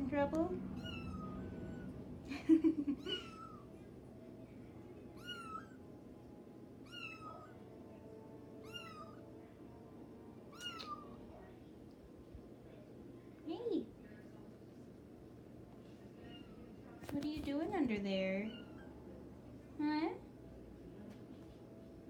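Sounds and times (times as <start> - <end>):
kitten meowing: 0.8 - 1.9, 3.0 - 3.6, 5.2 - 5.8, 6.8 - 7.5, 8.6 - 9.2, 10.5 - 11.2.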